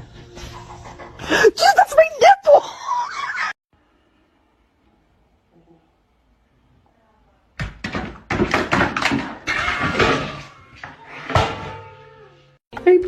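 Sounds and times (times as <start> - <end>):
knocks and thuds: 7.6 - 10.4.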